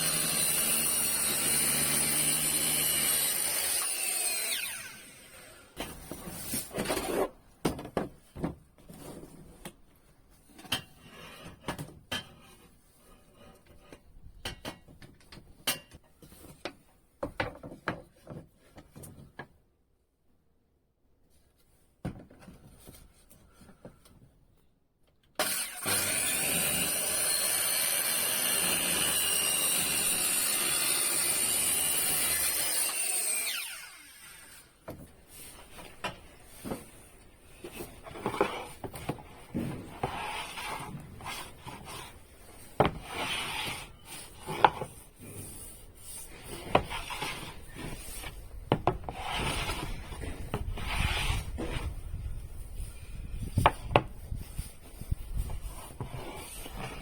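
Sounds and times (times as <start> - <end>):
electric power tool cutting wood: 0.0 - 5.8, 25.4 - 34.8.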